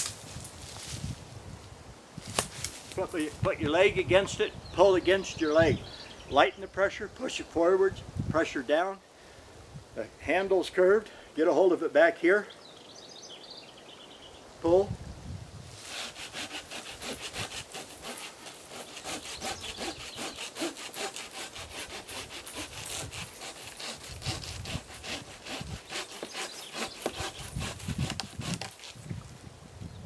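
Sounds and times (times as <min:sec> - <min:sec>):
hand saw cutting wood: 0:15.8 - 0:29.0.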